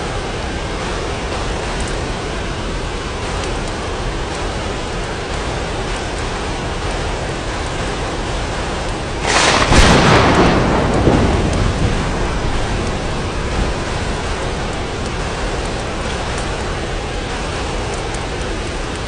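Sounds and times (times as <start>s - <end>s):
steady rain: 0.0s - 19.0s
thunder clap: 9.2s - 19.0s.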